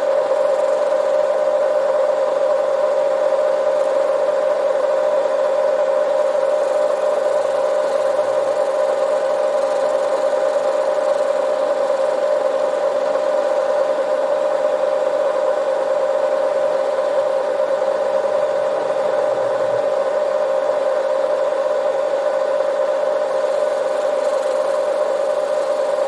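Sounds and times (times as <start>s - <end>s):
metal lathe whining: 6.1s - 26.0s.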